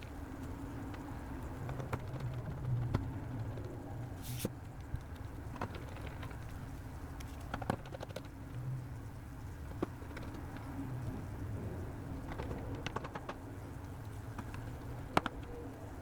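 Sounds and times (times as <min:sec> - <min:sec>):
brief rustle: 0:04.2 - 0:04.5.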